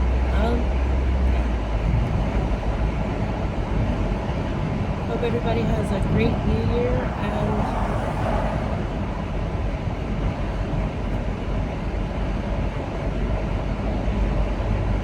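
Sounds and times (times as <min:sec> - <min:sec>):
vehicle road and engine rumble: 0:00.0 - 0:15.0.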